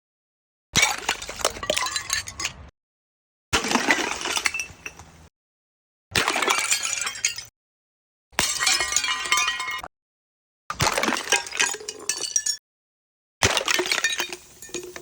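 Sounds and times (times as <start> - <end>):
glass smashing: 0.8 - 2.7, 3.6 - 5.0, 6.2 - 7.5, 8.4 - 9.9, 10.8 - 12.6, 13.4 - 15.0
glass pieces clinking: 1.1 - 2.7, 3.9 - 5.1, 6.4 - 7.5, 8.4 - 9.9, 11.4 - 12.6, 13.8 - 15.0.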